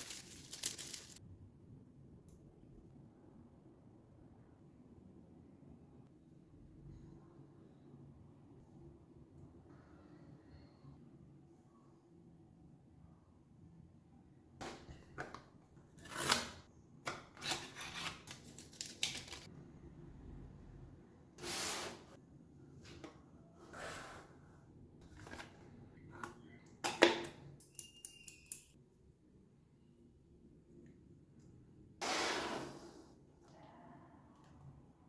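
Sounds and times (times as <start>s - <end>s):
packaging rustling and scraping: 0.0s - 1.2s.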